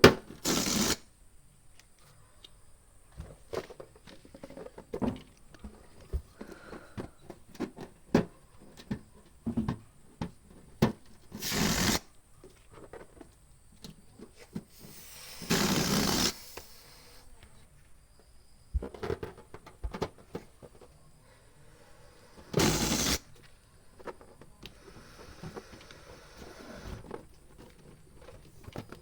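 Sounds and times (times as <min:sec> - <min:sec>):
air hissing from hand pump: 0:00.4 - 0:01.0, 0:11.3 - 0:12.1, 0:14.7 - 0:17.3, 0:22.0 - 0:23.3, 0:24.7 - 0:27.1
rubber balloons squeaking: 0:00.4 - 0:01.0, 0:11.4 - 0:12.1, 0:14.8 - 0:17.2, 0:22.3 - 0:23.4.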